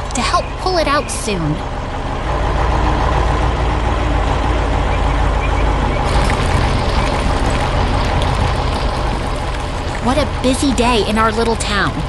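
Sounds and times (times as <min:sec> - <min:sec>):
diesel engine rumbling: 0:00.0 - 0:12.0.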